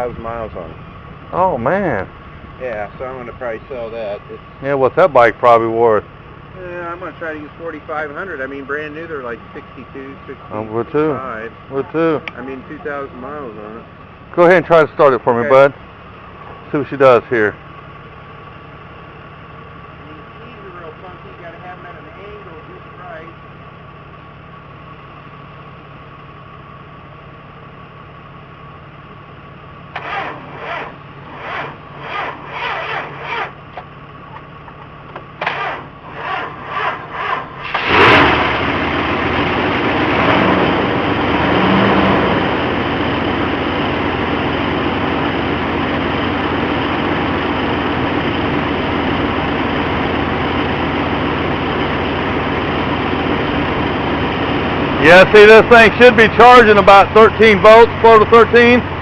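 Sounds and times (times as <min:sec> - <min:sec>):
car engine running and idling: 0:00.0 - 0:59.0
car starter cranking: 0:29.9 - 0:33.9, 0:35.1 - 0:38.8.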